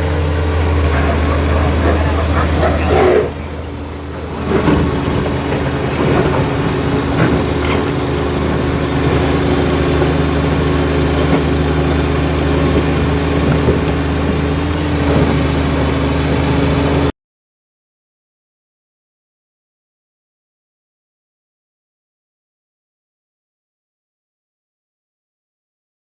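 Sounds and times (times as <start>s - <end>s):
bulldozer diesel engine running: 0.0s - 17.1s.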